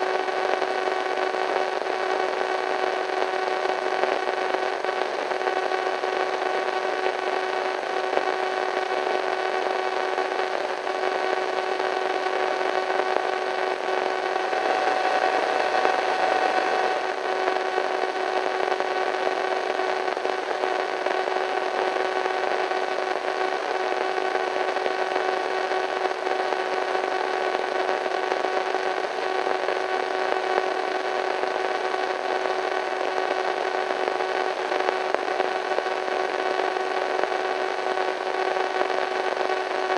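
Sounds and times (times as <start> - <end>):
radio static hiss: 0.0 - 39.9
faint steady humming tones: 11.4 - 20.2.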